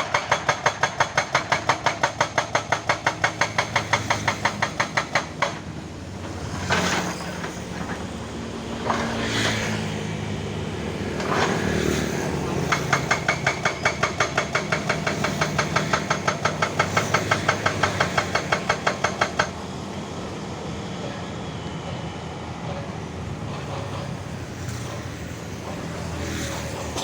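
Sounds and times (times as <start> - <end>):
hydraulic rock breaker hammering: 0.0 - 9.8, 11.1 - 19.7, 24.8 - 27.0.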